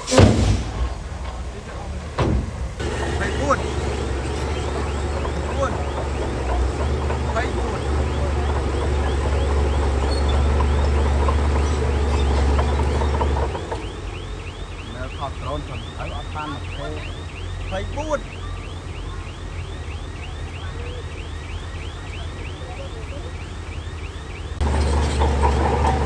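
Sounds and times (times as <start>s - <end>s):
diesel engine running: 0.0s - 26.0s
high repeating chirp: 2.8s - 24.6s.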